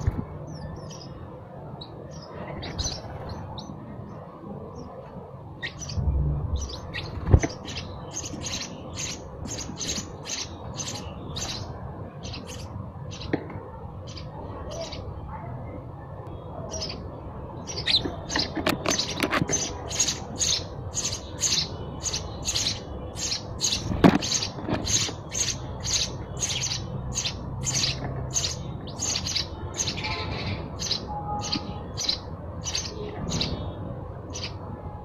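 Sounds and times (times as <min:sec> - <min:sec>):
sparrows chirping: 0:00.0 - 0:35.0.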